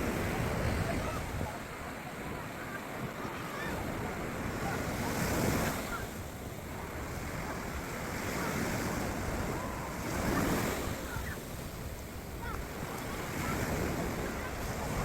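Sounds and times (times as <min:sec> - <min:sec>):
rough surf crashing: 0:00.0 - 0:15.0
wind buffeting microphone: 0:00.0 - 0:15.0.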